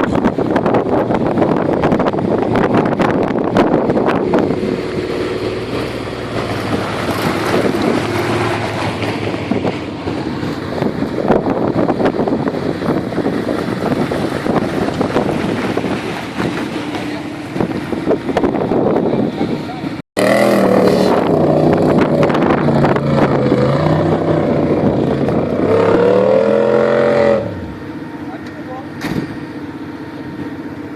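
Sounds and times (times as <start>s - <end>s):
wind noise on microphone: 0.0s - 27.9s
vehicle engine running hard: 0.0s - 30.9s.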